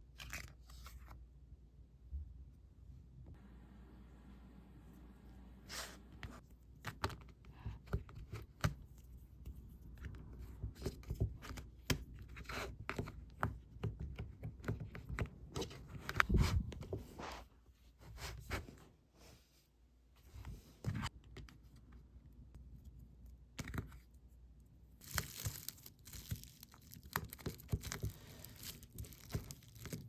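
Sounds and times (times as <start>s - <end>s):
small tools tapping and scraping clay: 25.0s - 30.0s.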